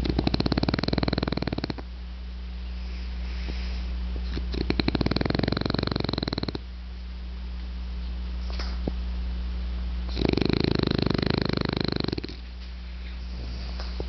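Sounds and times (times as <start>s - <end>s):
dog snoring: 0.0s - 1.9s, 3.5s - 6.7s, 10.1s - 12.5s.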